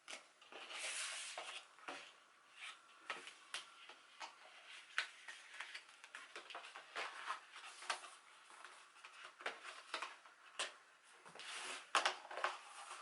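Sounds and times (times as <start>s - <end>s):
paper and plastic rustling: 4.5s - 13.0s.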